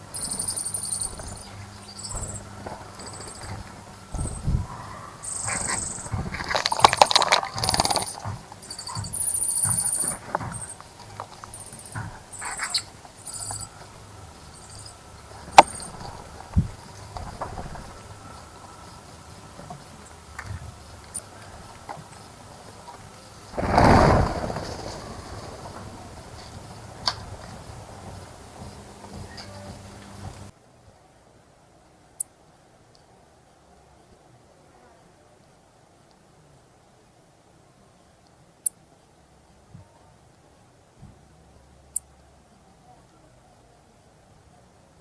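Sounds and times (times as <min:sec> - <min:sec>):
high thin bird chirps: 0:00.0 - 0:23.3
birds splashing in water: 0:00.0 - 0:30.5
wings fluttering: 0:00.0 - 0:30.5.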